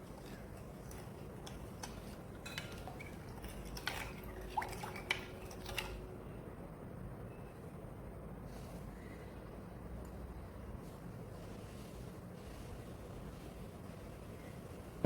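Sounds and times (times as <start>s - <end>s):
utensils and dishes clinking: 0.0s - 6.0s.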